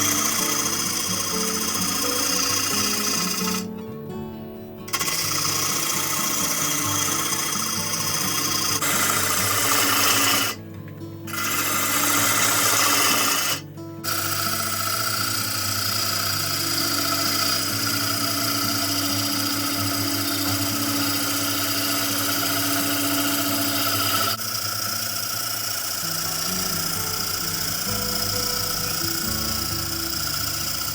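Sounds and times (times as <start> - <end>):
lathe gouge cutting wood: 0.0 - 3.7, 4.9 - 10.6, 11.3 - 30.9
background music: 0.0 - 24.4, 25.7 - 30.9.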